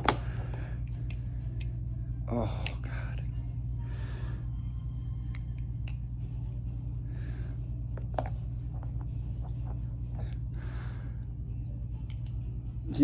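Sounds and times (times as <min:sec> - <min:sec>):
steady low hum: 0:00.0 - 0:13.0
butterfly knife clicking: 0:00.6 - 0:01.9, 0:02.6 - 0:03.6, 0:04.6 - 0:07.1, 0:12.0 - 0:12.4.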